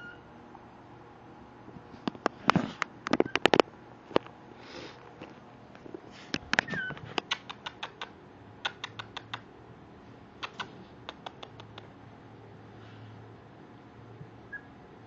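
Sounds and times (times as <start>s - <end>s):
puppies' claws clicking: 6.3s - 9.5s, 10.4s - 12.0s
puppy whimpering: 6.6s - 8.1s.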